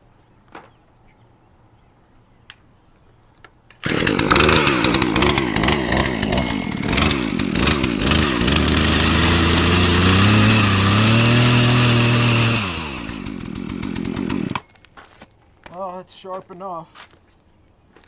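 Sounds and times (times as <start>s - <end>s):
chainsaw cutting: 3.8s - 14.7s.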